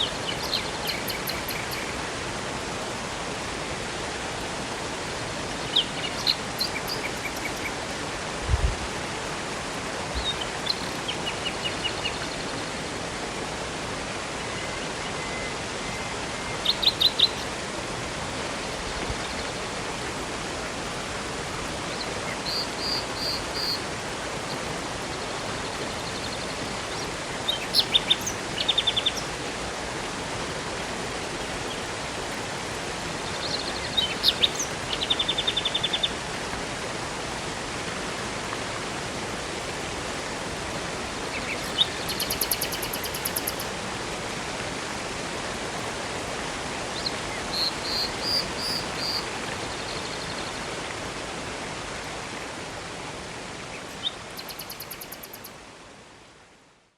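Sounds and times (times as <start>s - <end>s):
songbirds chirping: 0.0s - 2.1s, 5.4s - 7.9s, 10.1s - 12.8s, 21.8s - 29.4s, 33.2s - 36.2s, 41.3s - 43.7s, 53.7s - 55.6s
river and waterfall rushing: 0.0s - 56.6s.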